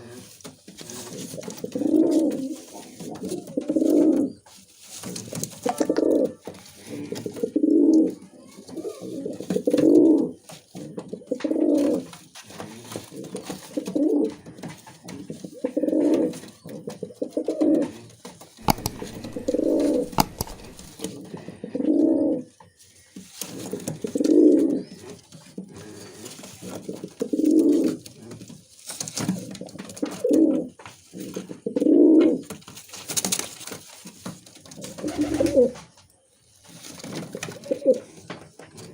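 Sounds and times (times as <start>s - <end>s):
pigeon cooing: 0.0s - 4.4s, 5.6s - 22.5s, 23.5s - 28.4s, 30.0s - 32.4s, 34.8s - 35.8s, 37.4s - 38.2s
sharp clicks: 18.6s - 21.1s.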